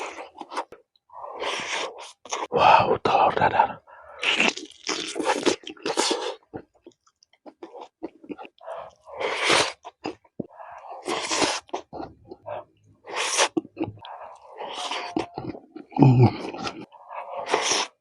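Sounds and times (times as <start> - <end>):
person chewing with wet clicks: 4.2 - 9.1, 9.7 - 17.6.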